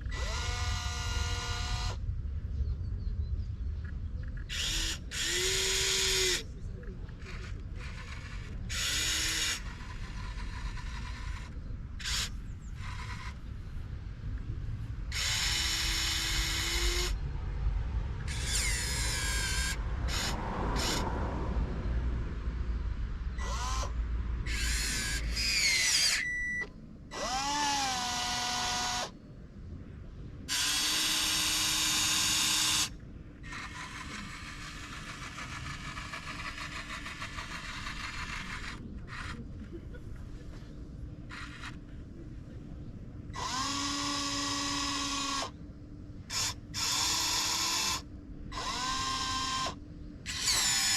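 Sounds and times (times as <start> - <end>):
small electric motors whining: 0.0 - 2.0, 4.4 - 13.5, 15.1 - 17.2, 18.2 - 21.1, 23.4 - 29.2, 30.5 - 39.7, 40.4 - 41.9, 43.3 - 45.6, 46.3 - 50.9.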